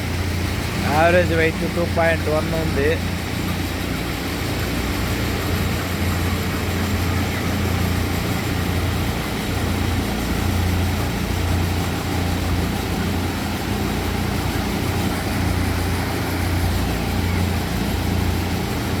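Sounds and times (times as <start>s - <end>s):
ventilation fans humming: 0.0s - 19.0s.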